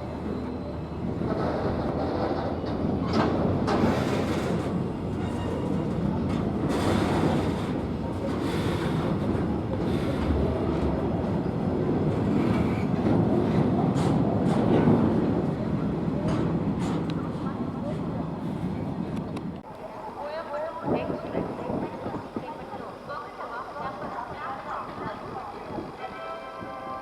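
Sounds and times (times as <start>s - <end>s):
train rumbling past: 0.0s - 19.6s.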